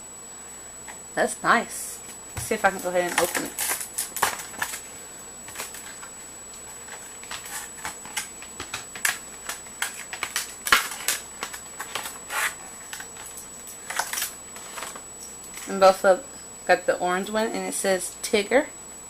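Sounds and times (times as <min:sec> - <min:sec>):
packaging being opened: 0:02.7 - 0:04.9, 0:05.5 - 0:15.0.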